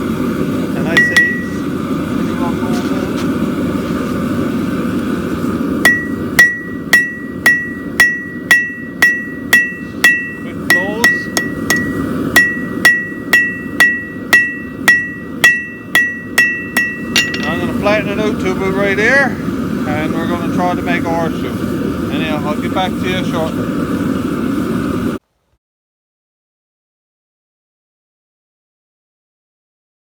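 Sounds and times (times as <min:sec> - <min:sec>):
steady low rumble: 0:00.0 - 0:25.2
hammer striking hot steel: 0:00.9 - 0:01.7, 0:05.8 - 0:18.5
anvil ringing: 0:01.0 - 0:01.5, 0:05.9 - 0:18.0.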